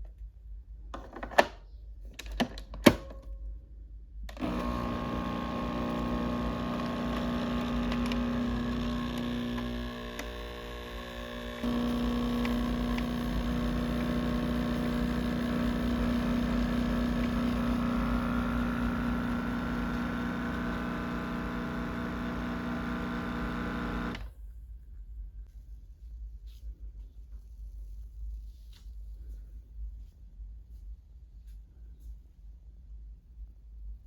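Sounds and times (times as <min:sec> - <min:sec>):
motor humming: 0:04.3 - 0:24.3.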